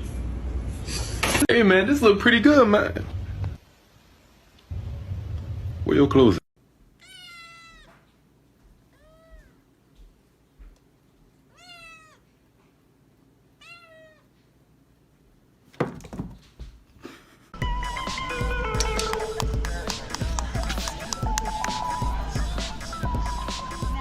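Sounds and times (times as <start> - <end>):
cat meowing: 7.0 - 8.1, 8.9 - 9.6, 11.5 - 12.4, 13.6 - 14.4.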